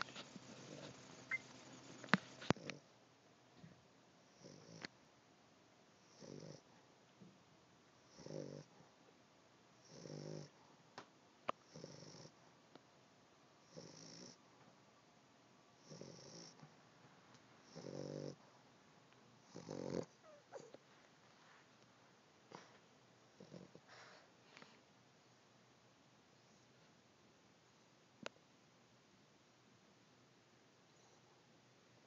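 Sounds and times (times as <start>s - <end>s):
animal snoring: 0.0s - 2.9s, 4.3s - 4.9s, 6.0s - 6.7s, 8.0s - 8.8s, 9.8s - 10.6s, 11.6s - 12.4s, 13.6s - 14.4s, 15.8s - 16.7s, 17.6s - 18.5s, 19.4s - 20.8s, 23.4s - 24.2s.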